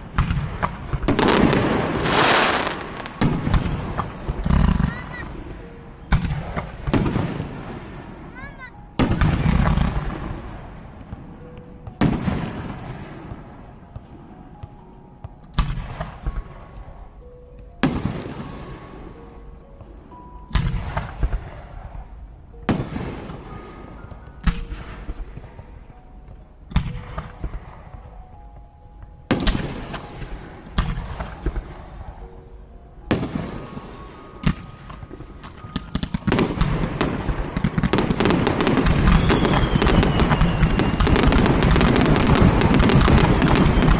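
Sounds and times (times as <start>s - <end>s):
fireworks bursting: 0.0s - 32.4s, 33.0s - 43.9s.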